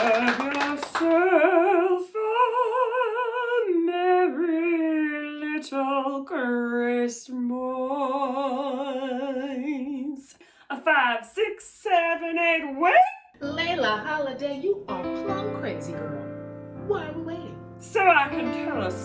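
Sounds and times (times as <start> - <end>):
woman singing with vibrato: 0.0 - 13.3, 17.8 - 19.0
singer breathing: 10.4 - 10.7.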